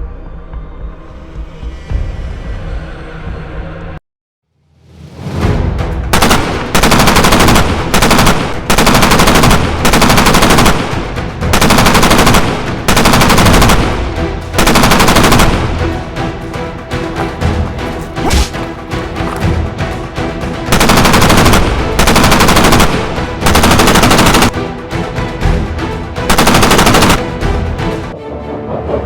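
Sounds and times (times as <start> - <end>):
background music: 4.8 - 29.0
automatic gunfire bursts: 6.2 - 14.0, 14.6 - 15.8, 20.7 - 24.6, 26.3 - 27.3.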